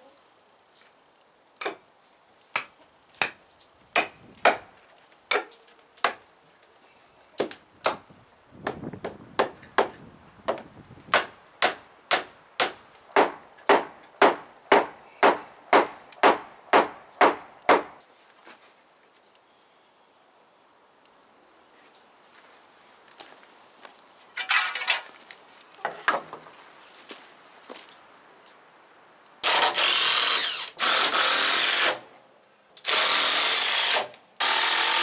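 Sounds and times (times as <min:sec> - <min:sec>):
hammer driving nails into wood: 0:09.4 - 0:18.0.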